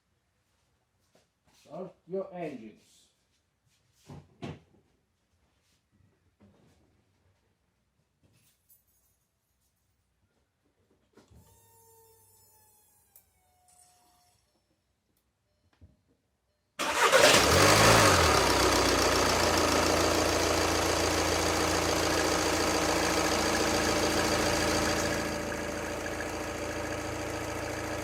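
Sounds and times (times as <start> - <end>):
diesel engine cranking and starting: 16.8 - 28.0
diesel engine idling: 16.8 - 28.0.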